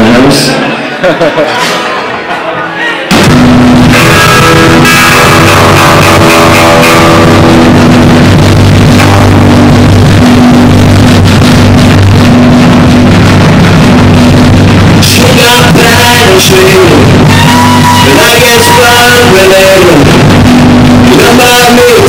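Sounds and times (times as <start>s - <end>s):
distorted live rock band: 0.0s - 22.0s.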